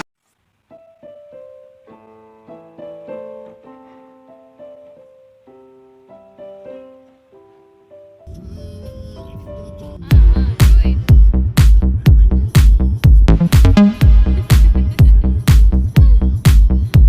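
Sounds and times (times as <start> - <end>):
soft piano melody: 0.7 - 10.4
loud music: 10.1 - 17.0.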